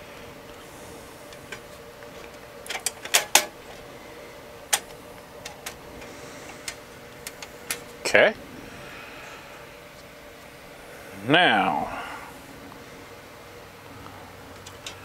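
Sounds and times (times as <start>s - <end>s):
faint steady hum: 0.0s - 15.0s
computer hardware clicks and knocks: 2.7s - 3.6s.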